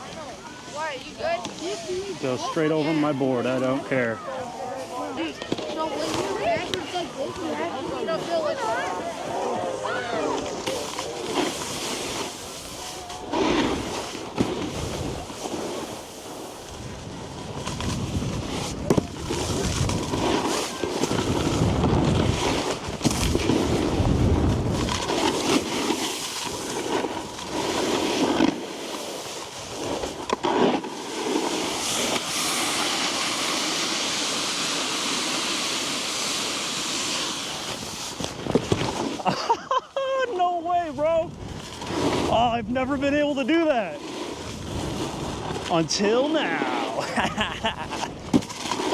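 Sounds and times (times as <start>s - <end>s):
snowboard scraping over snow: 0.0s - 48.9s
wind noise on microphone: 16.6s - 25.9s, 37.6s - 39.3s, 40.9s - 43.4s, 44.2s - 45.8s.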